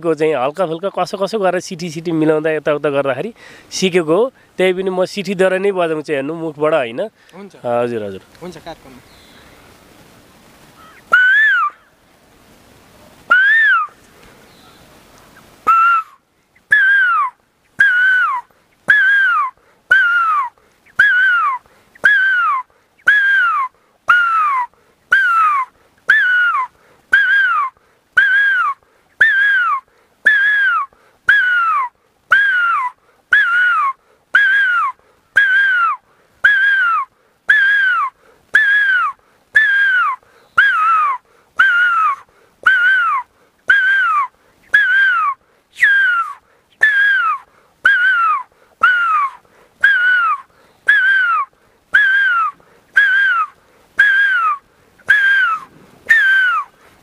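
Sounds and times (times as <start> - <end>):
man whistling bird call: 11.1 - 11.9, 13.3 - 14.9, 15.7 - 56.7.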